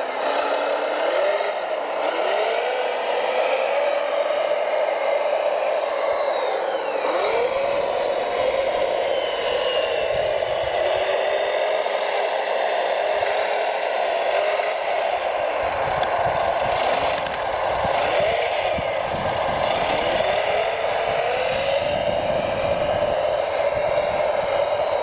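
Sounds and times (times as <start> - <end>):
electric motors whirring and whining: 0.0 - 25.0
sharp clicks: 15.9 - 18.2.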